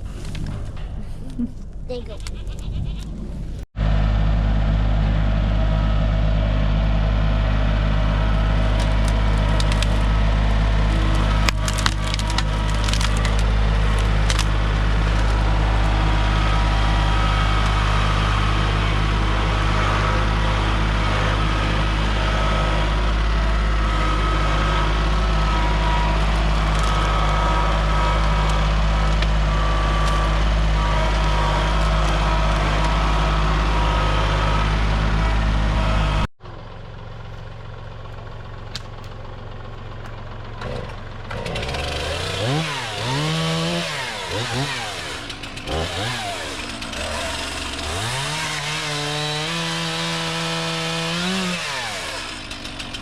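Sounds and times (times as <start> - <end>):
heavy machine engine running: 3.2 - 53.0
wood cracking and snapping: 8.5 - 16.0, 26.2 - 27.4.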